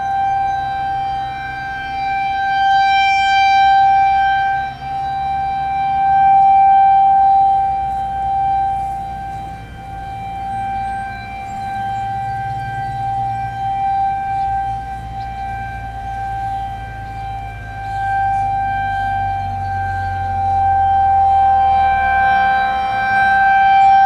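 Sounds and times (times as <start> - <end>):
rotating warning siren: 0.0 - 24.0.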